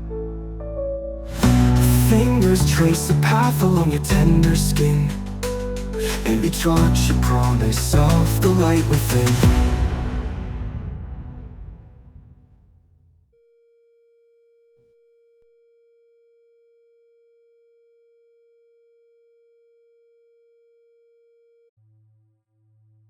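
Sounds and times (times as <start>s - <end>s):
music: 0.0s - 12.3s.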